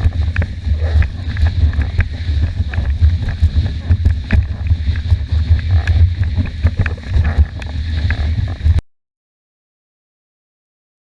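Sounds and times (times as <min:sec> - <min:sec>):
wind buffeting microphone: 0:00.0 - 0:08.8.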